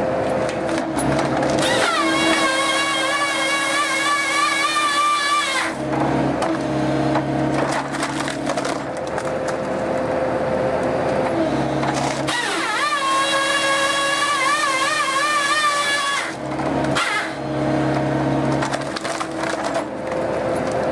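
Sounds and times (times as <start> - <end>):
wood cracking and splintering: 0.5 - 5.8, 7.5 - 10.0, 11.8 - 17.0, 18.5 - 20.9.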